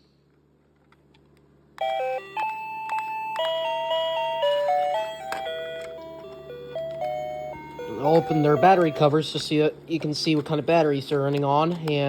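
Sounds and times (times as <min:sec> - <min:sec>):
electronic doorbell chimes beeping: 0:01.8 - 0:09.2.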